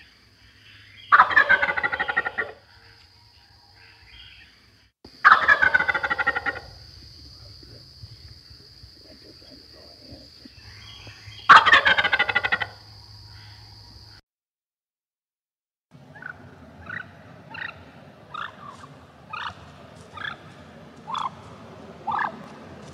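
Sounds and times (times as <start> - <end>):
turkey gobbling: 1.1 - 2.6, 5.2 - 6.8, 9.0 - 12.8, 16.1 - 22.5.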